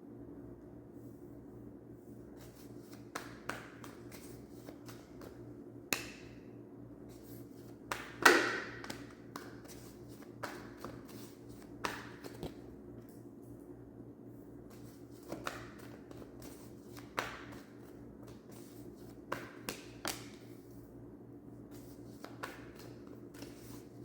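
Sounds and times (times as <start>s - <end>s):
cards being shuffled: 2.4s - 6.0s, 7.1s - 12.6s, 14.7s - 20.5s, 21.7s - 24.0s
card slap: 7.9s - 9.5s.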